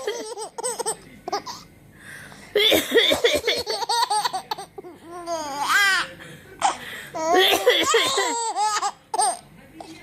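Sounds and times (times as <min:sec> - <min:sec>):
baby laughing: 0:00.0 - 0:01.6, 0:03.4 - 0:09.4.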